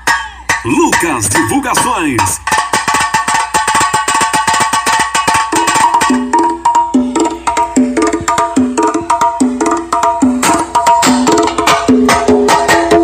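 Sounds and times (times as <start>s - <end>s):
loud music with fast percussion: 0.0s - 13.0s
clicking beats: 0.6s - 2.4s.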